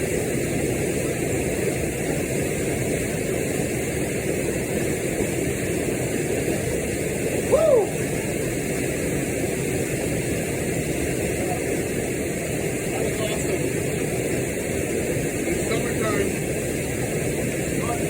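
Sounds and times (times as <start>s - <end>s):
waterfall roar: 4.0s - 18.0s.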